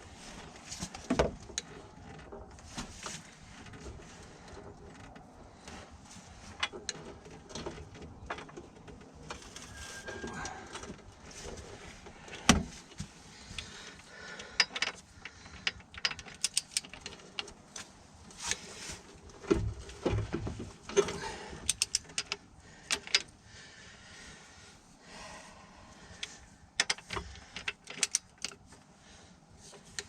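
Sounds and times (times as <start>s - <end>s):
hand tools clicking on metal: 14.3s - 17.6s, 21.0s - 23.3s, 26.8s - 28.6s.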